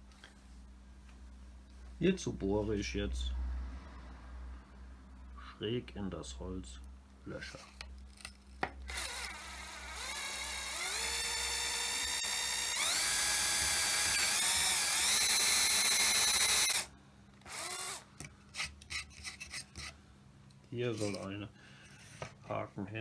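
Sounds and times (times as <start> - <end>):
electric drill boring into wood: 8.8 - 18.1.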